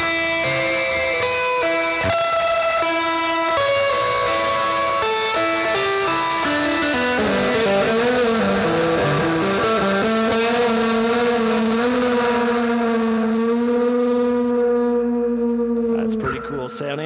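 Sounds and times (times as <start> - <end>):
distorted electric guitar: 0.0 - 17.0.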